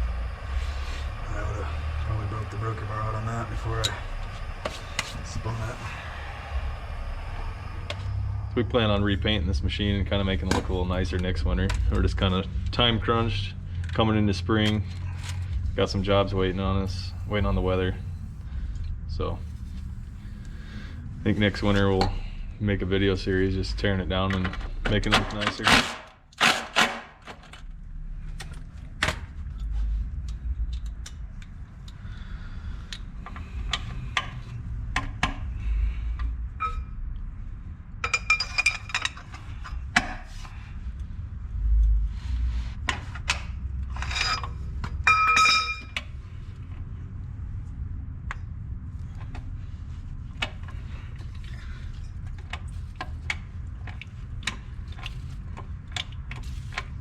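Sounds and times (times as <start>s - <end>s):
low steady rumble: 0.0s - 25.7s, 27.5s - 57.0s
metal tools clinking on steel: 43.9s - 46.0s.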